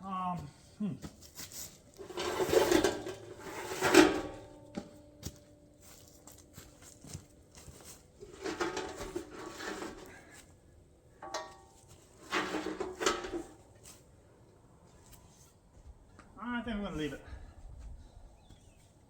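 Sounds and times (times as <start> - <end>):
scraping on steel: 1.4 - 4.8, 7.8 - 10.5, 11.2 - 14.0.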